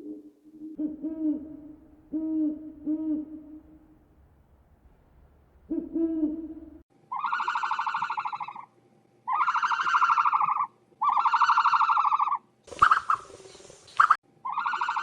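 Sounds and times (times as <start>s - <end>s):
low animal hoot: 0.0s - 4.3s, 5.6s - 7.9s.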